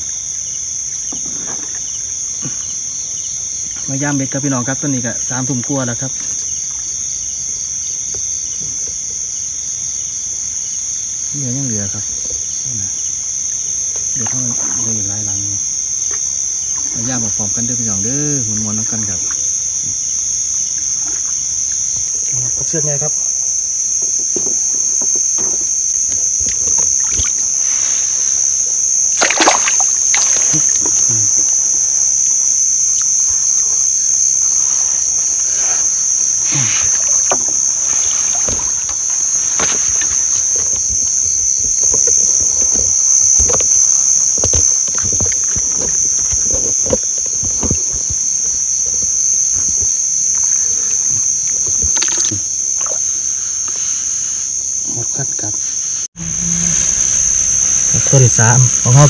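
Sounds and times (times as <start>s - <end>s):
night insects chorus: 0.0s - 59.0s
water sloshing and splashing: 24.1s - 53.1s.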